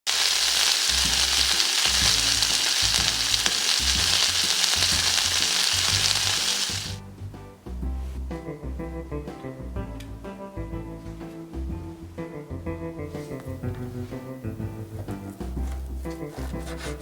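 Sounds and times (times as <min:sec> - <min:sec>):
steak sizzling in a hot pan: 0:00.0 - 0:07.0
background music with bass line: 0:00.5 - 0:17.0.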